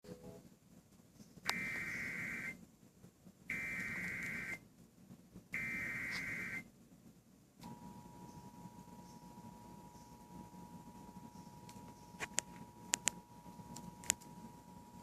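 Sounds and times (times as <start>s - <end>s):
steady attention tone: 1.4s - 2.7s, 3.5s - 4.7s, 5.5s - 6.8s
warbling digital data tones: 1.5s - 2.6s, 3.5s - 4.6s, 5.6s - 6.7s.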